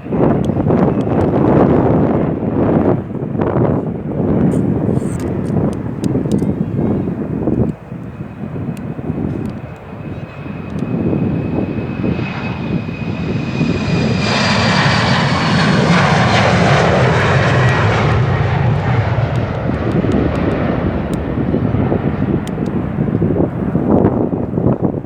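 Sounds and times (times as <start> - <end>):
jet airliner passing: 0.0 - 25.0
wind buffeting microphone: 0.0 - 25.0.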